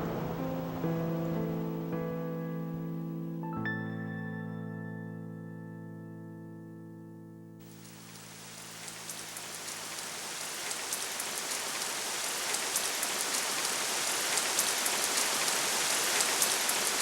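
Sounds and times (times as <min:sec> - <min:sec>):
rain falling: 0:00.0 - 0:03.0, 0:07.6 - 0:17.0
raindrops ticking: 0:07.6 - 0:17.0.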